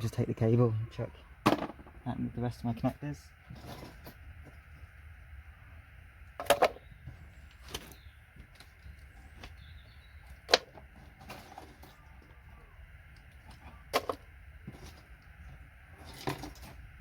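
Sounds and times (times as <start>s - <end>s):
faint steady background noise: 0.0s - 17.0s.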